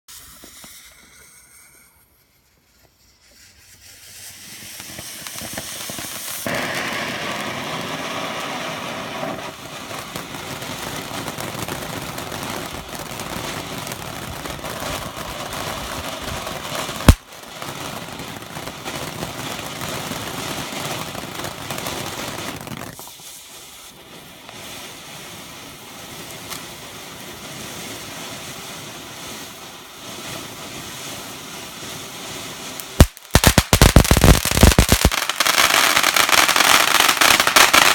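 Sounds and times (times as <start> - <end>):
firework fountain spraying sparks: 0.1 - 37.9
sharp crack: 17.0 - 17.3.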